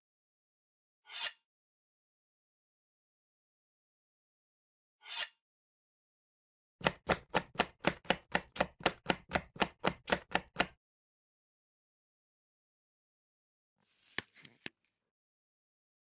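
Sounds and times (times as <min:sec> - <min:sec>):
knife chopping food: 0:06.8 - 0:10.8.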